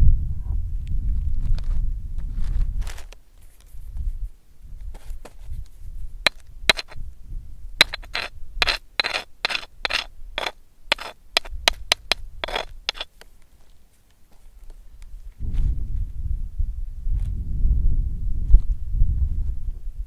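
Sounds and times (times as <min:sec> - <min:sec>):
dry scraping and crunching: 0:01.2 - 0:07.0, 0:07.8 - 0:15.8.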